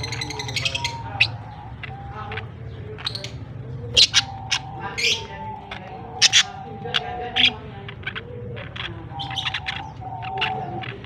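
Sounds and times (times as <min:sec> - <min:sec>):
budgerigars chattering: 0:00.0 - 0:11.0
loud sharp bird calls: 0:00.0 - 0:11.0.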